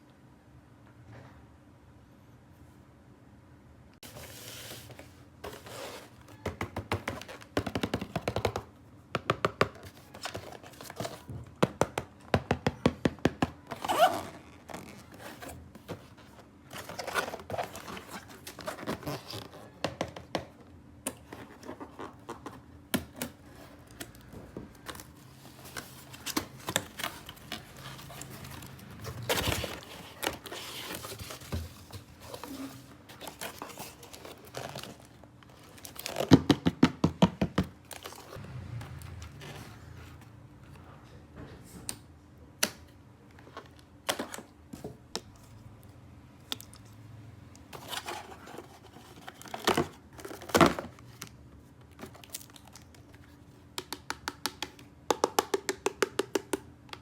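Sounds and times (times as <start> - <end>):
plastic scraping: 24.8 - 36.6.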